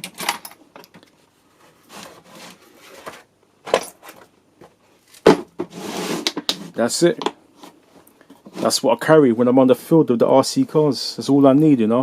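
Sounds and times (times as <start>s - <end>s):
tools rubbing and scraping: 1.5s - 3.3s, 5.6s - 6.8s, 7.5s - 9.1s.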